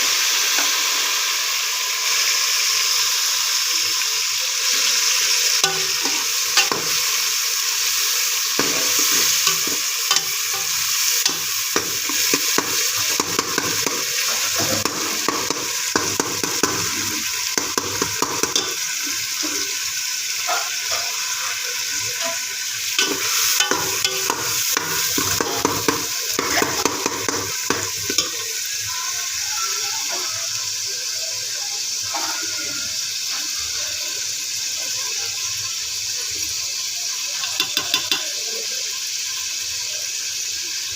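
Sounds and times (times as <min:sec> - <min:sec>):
okra sizzling in hot oil: 0:00.0 - 0:40.9
spatula knocking against pan: 0:08.6 - 0:17.0, 0:17.6 - 0:18.8, 0:23.0 - 0:28.3, 0:37.4 - 0:38.3.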